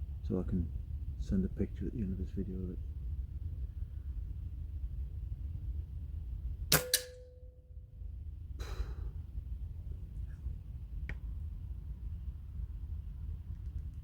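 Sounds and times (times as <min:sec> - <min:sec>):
air rifle cracks: 0:06.7 - 0:07.4
breathy exhale: 0:08.6 - 0:09.2.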